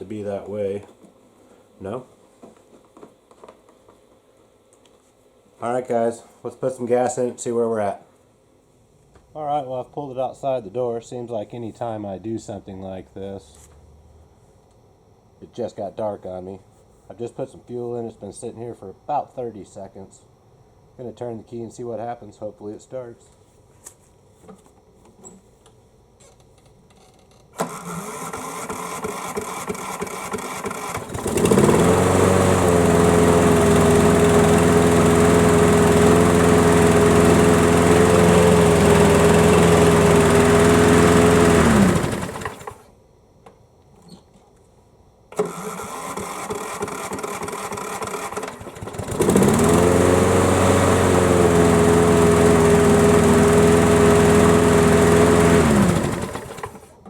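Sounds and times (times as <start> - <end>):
electric starter cranking: 27.5 - 42.9, 45.3 - 56.9
mower engine running: 27.6 - 42.8, 45.4 - 56.9.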